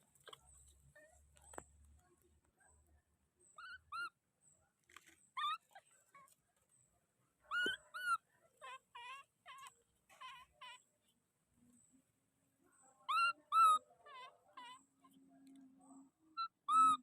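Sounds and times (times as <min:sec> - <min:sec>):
baby monkey crying: 0:07.5 - 0:10.9, 0:13.1 - 0:14.9, 0:16.4 - 0:17.0.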